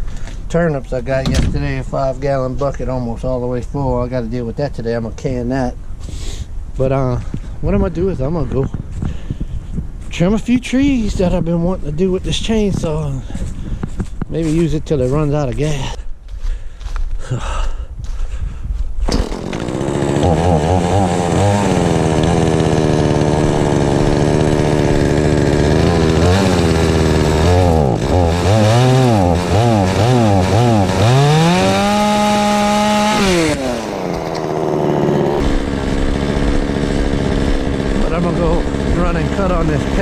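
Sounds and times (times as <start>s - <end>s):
chainsaw engine revving: 19.1s - 40.0s.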